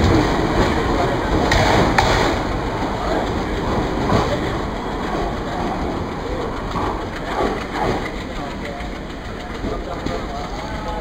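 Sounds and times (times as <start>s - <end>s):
train wheels rumbling on rails: 0.0s - 11.0s.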